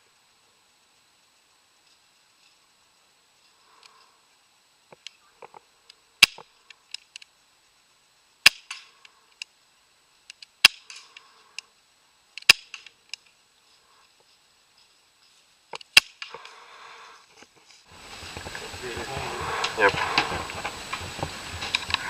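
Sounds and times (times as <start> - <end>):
airsoft gun shots: 8.4 - 8.9
faint clicks and rattle: 17.2 - 22.0.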